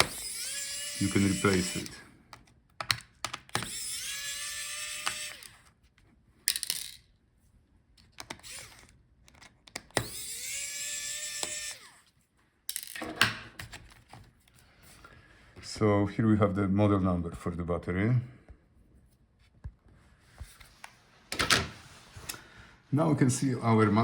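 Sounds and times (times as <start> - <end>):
electric screwdriver motor whining: 0.0 - 2.0, 3.4 - 5.7, 8.3 - 9.0, 9.8 - 12.1.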